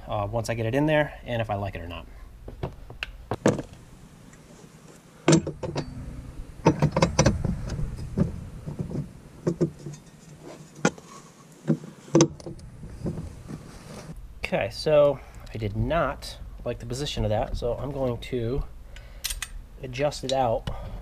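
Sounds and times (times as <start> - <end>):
metal clanks and knocks: 5.3 - 11.0.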